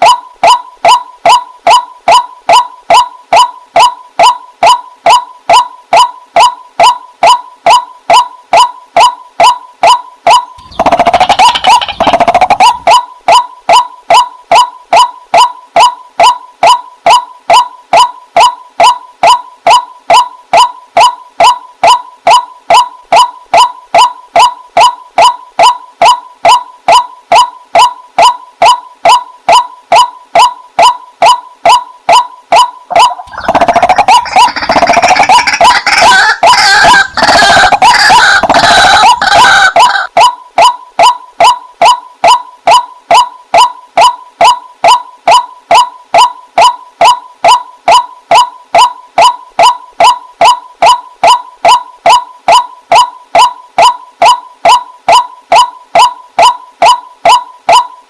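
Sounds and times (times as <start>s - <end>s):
waterhen calling: 10.6s - 13.8s, 32.9s - 40.2s.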